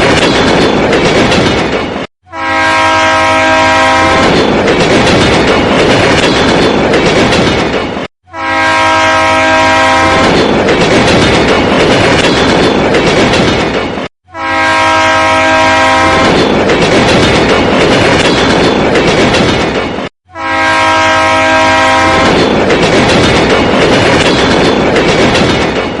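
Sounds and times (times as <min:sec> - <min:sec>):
train rumbling on rails: 0:00.0 - 0:26.0
train horn: 0:02.2 - 0:04.4, 0:08.2 - 0:10.4, 0:14.2 - 0:16.4, 0:20.2 - 0:22.4.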